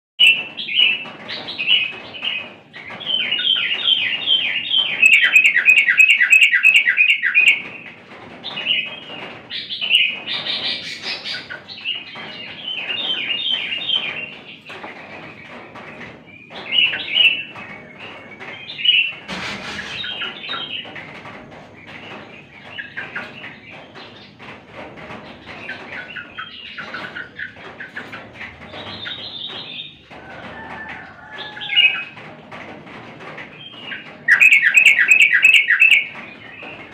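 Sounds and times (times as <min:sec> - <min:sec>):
bulbul singing chattering notes: 0:34.3 - 0:36.1.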